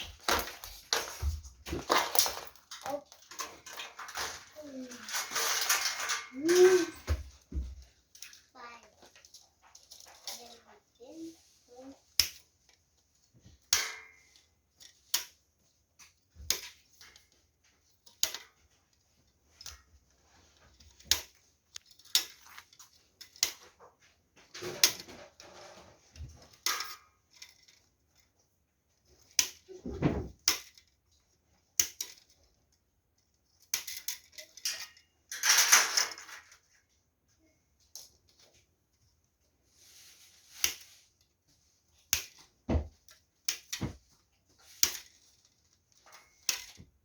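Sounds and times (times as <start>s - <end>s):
small hard parts clicking: 0.0s - 10.7s, 11.8s - 15.4s, 16.0s - 36.9s
scraping and rustling: 0.0s - 30.4s, 38.1s - 47.0s.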